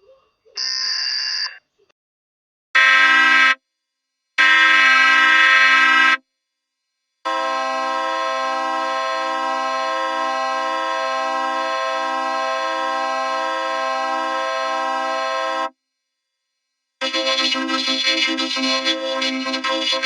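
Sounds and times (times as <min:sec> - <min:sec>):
harsh horn-like alarm tone: 0:02.7 - 0:03.6, 0:04.4 - 0:06.2, 0:07.3 - 0:15.8, 0:17.0 - 0:20.0.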